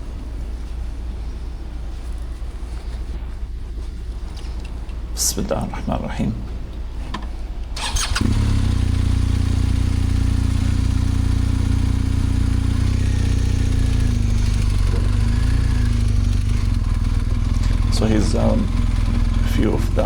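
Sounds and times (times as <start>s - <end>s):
motorcycle engine running: 7.8s - 20.0s.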